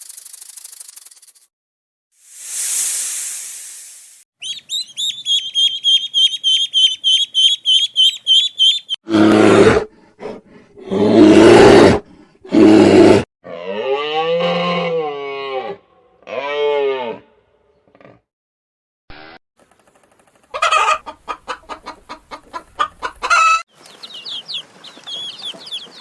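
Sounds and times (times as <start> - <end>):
bird chirping rapidly: 4.4 - 9.0, 23.7 - 26.0
animal roaring: 9.1 - 9.9, 10.8 - 17.3.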